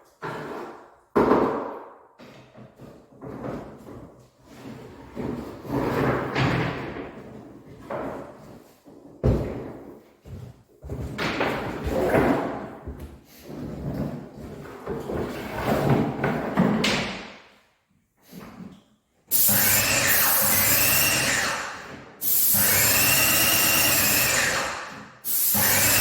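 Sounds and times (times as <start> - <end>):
building work knocks and thuds: 0.2 - 17.4.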